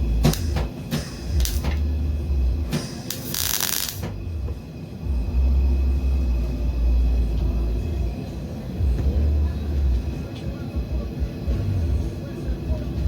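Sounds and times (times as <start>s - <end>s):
steady low rumble: 0.0s - 13.0s
welding crackling hiss: 0.2s - 1.8s, 2.6s - 4.2s.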